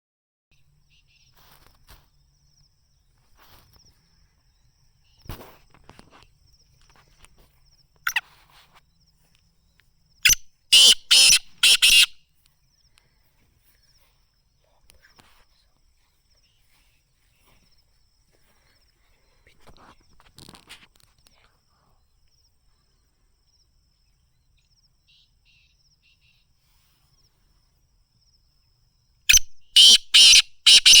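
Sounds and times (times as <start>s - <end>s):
francolin call: 8.1s - 8.4s, 10.2s - 12.3s, 25.1s - 26.5s, 29.3s - 31.0s.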